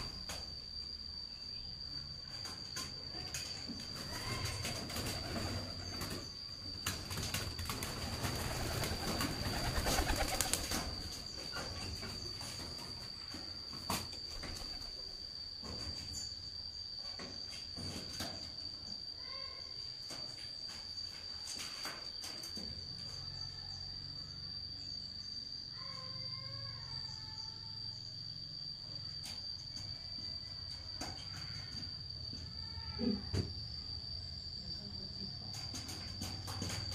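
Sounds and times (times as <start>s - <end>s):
pigeons cooing: 8.1s - 11.0s.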